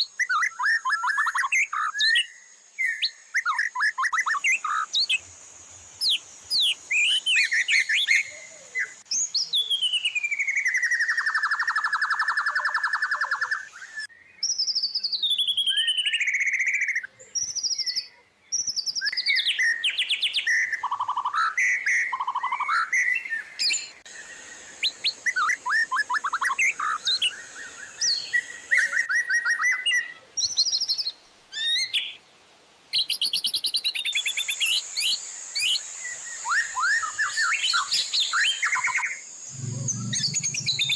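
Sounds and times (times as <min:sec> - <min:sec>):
songbird whistling and trilling: 0:00.0 - 0:05.2, 0:06.0 - 0:24.0, 0:28.0 - 0:32.2, 0:36.4 - 0:40.9
high-pitched hiss: 0:04.3 - 0:12.2, 0:23.6 - 0:28.8, 0:34.0 - 0:40.9.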